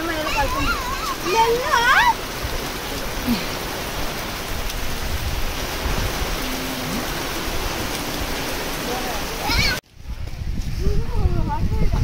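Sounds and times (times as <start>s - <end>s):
falling water hissing: 0.0s - 9.8s.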